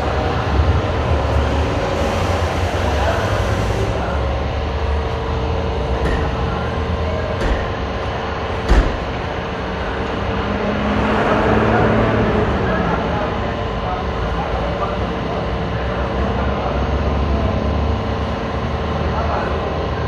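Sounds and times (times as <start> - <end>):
low rumble: 0.0 - 15.4
indistinct voices: 0.0 - 20.0
steady hum: 0.0 - 20.0
sharp knock: 6.0 - 6.5, 7.4 - 7.9, 8.6 - 9.2.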